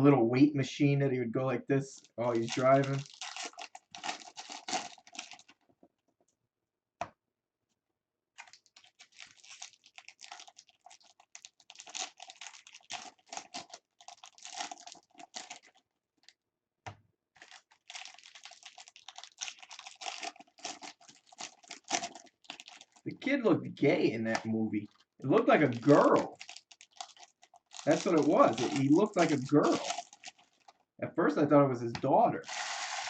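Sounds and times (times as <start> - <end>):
foil wrappers crinkling: 1.9 - 5.6, 8.4 - 16.3, 17.4 - 23.4, 24.2 - 30.9, 32.4 - 33.0.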